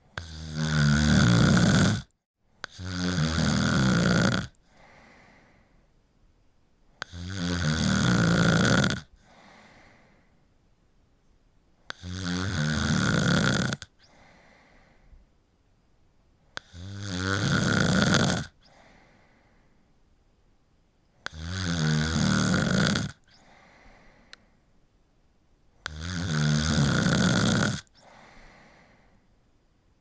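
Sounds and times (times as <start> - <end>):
person snoring: 0.2 - 5.1, 7.0 - 10.0, 11.9 - 14.3, 16.6 - 19.0, 21.2 - 23.7, 25.8 - 28.9
soft breathy exhale: 4.7 - 5.9, 9.2 - 10.4, 14.0 - 15.3, 18.6 - 19.8, 23.3 - 24.6, 28.0 - 29.3.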